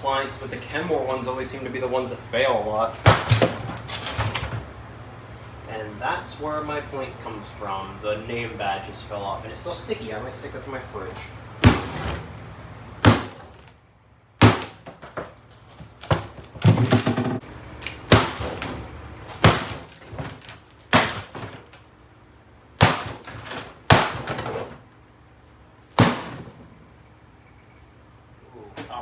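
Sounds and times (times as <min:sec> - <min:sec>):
heavy blows smashing a fridge: 0:00.1 - 0:05.0, 0:11.0 - 0:13.8, 0:14.4 - 0:22.0, 0:22.7 - 0:25.0, 0:25.9 - 0:26.8.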